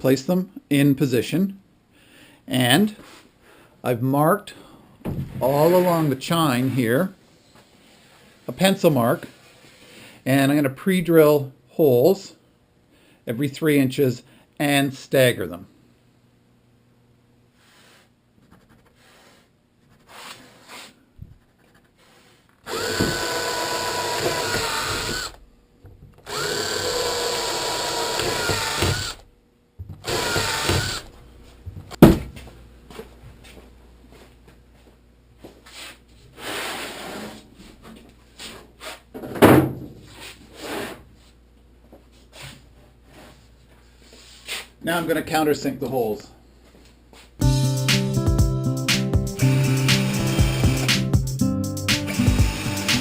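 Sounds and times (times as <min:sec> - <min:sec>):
power drill drilling wood: 0:22.7 - 0:25.4, 0:26.3 - 0:29.2, 0:30.0 - 0:31.1, 0:49.4 - 0:51.0, 0:52.1 - 0:53.0.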